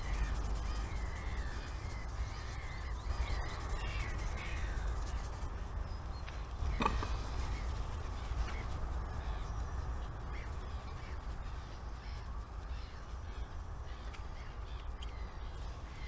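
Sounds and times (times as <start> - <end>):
crows cawing faintly: 0.0 - 5.7, 6.8 - 16.0
low background rumble: 0.0 - 16.0.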